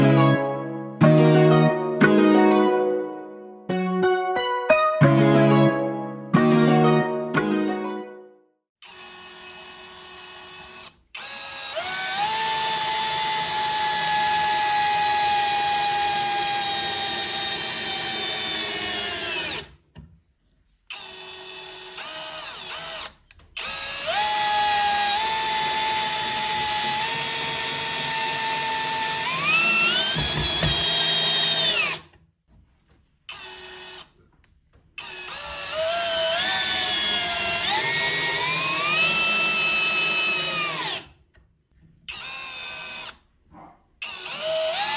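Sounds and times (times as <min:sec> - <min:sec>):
cordless drill motor whine: 0:08.8 - 0:19.7, 0:20.9 - 0:32.0, 0:35.0 - 0:41.1, 0:42.1 - 0:43.2, 0:44.0 - 0:44.9.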